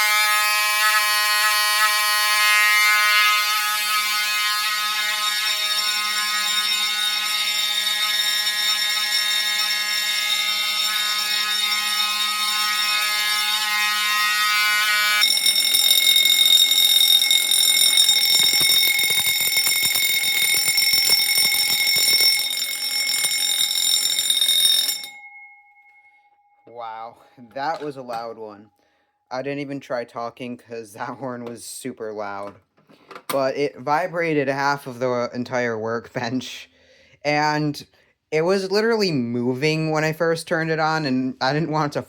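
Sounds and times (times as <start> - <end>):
mechanical horn buzzing: 0.0 - 18.4
fire alarm bell ringing: 0.0 - 27.4.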